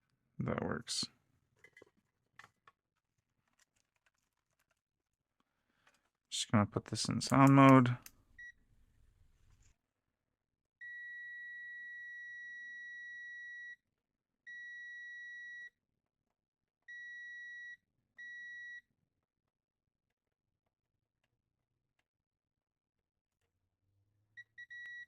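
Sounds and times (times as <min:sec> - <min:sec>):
multimeter continuity beeps: 0:24.4 - 0:25.0.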